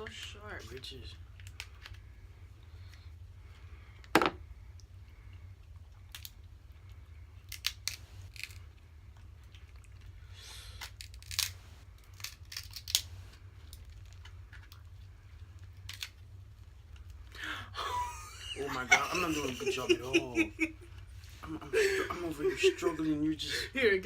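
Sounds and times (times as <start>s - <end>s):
steady low hum: 0.0s - 24.0s
crab shells cracking and snapping: 6.0s - 6.6s, 7.4s - 8.7s, 9.4s - 15.0s, 15.6s - 16.3s.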